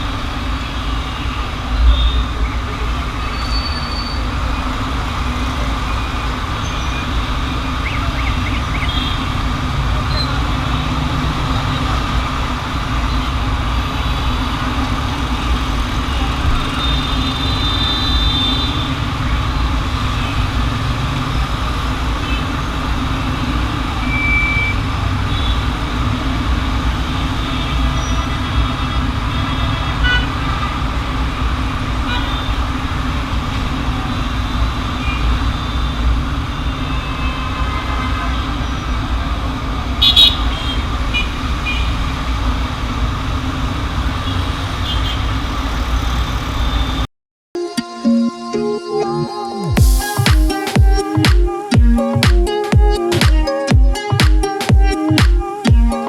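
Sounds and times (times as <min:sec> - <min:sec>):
dense road traffic: 0:00.0 - 0:52.8, 0:53.5 - 0:56.0
car horn toots: 0:40.0 - 0:41.9.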